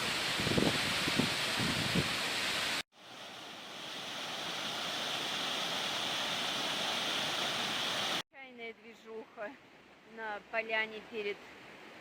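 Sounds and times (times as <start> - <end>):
waterfall roaring: 3.2 - 8.2.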